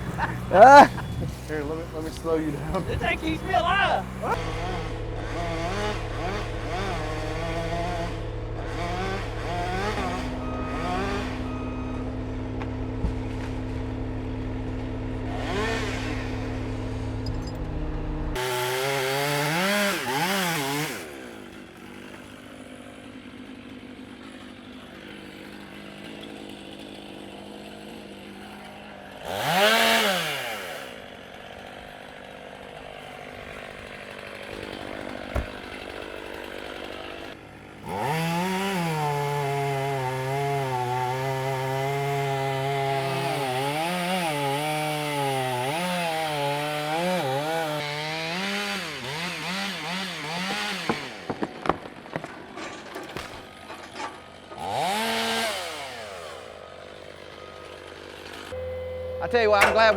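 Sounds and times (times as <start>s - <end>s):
steady engine running: 0.0s - 18.4s, 33.4s - 38.2s
chainsaw revving: 0.0s - 59.9s.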